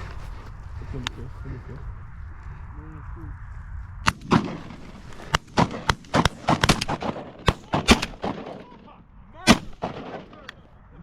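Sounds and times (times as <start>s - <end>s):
shotgun fire: 4.1s - 10.6s.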